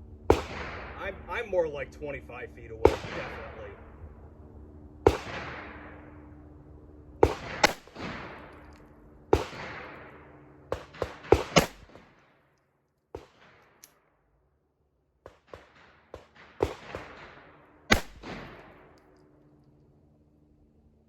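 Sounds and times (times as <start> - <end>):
pistol shots with echo: 0.3 - 1.4, 2.7 - 3.9, 5.0 - 6.5, 7.2 - 12.4, 13.1 - 14.0, 15.2 - 19.1.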